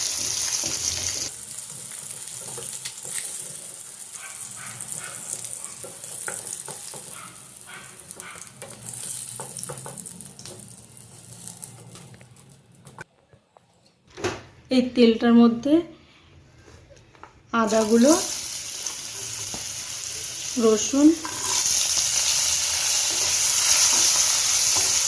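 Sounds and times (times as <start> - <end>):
eggs sizzling in hot oil: 0.0 - 12.1, 17.6 - 25.0
spatula scraping a pan: 21.2 - 21.8.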